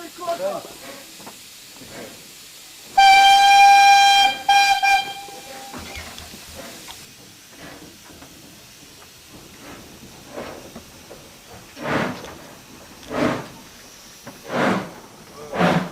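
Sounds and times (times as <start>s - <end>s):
steam locomotive running: 0.0s - 15.9s
steam whistle blasts: 3.0s - 6.0s.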